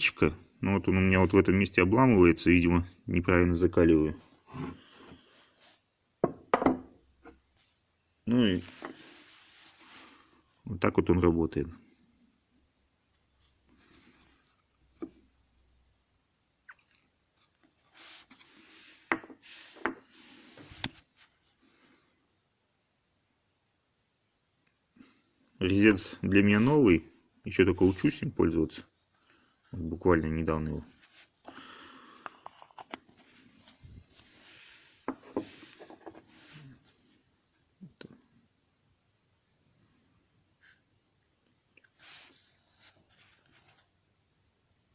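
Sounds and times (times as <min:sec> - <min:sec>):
wood knocking: 0:06.2 - 0:06.9.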